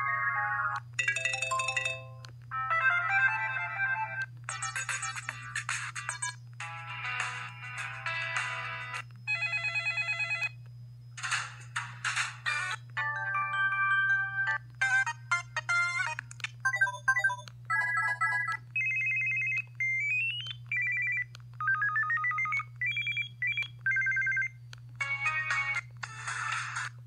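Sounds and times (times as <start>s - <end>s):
phone ringtone melodies: 0.0s - 5.2s, 12.6s - 19.6s.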